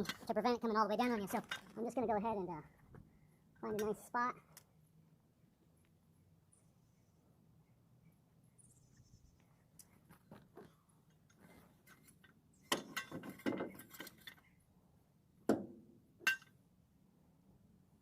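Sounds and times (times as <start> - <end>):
sharp metal clanks: 16.2 - 16.6.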